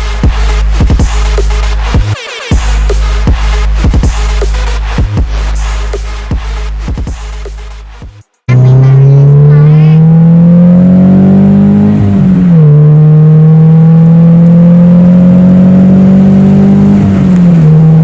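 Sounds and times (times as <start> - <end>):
car engine accelerating through gears: 8.5 - 18.0.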